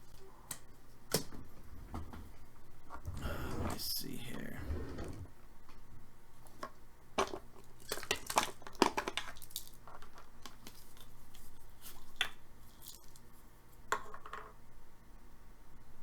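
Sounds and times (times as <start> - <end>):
crinkly wrappers tearing and rustling: 7.2 - 12.1.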